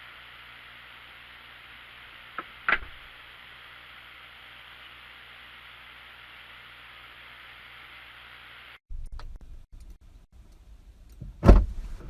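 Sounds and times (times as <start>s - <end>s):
steady hiss: 0.0s - 8.8s
loud thump: 11.4s - 11.8s.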